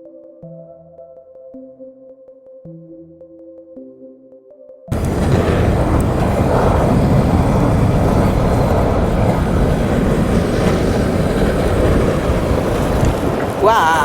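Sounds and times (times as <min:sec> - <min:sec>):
wind buffeting microphone: 0:04.9 - 0:14.0.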